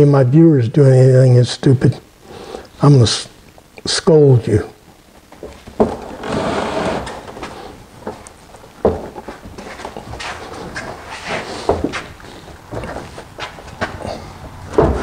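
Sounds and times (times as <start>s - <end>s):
air conditioner scraping in wall opening: 6.1s - 7.4s.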